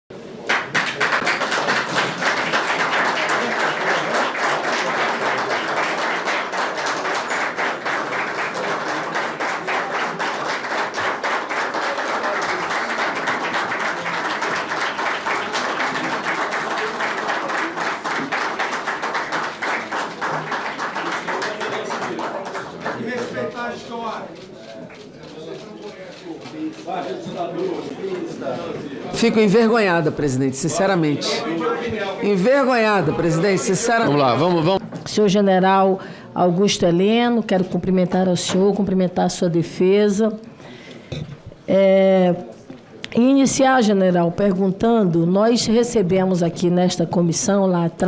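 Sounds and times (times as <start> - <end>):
crowd applauding: 0.4 - 27.1, 32.4 - 34.8.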